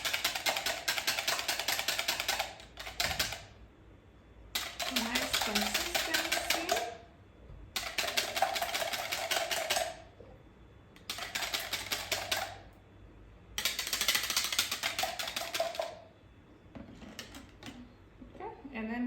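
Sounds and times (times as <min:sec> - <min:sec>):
whisk beating in bowl: 0:00.0 - 0:03.5, 0:04.6 - 0:07.0, 0:07.8 - 0:10.1, 0:11.1 - 0:12.6, 0:13.6 - 0:16.0.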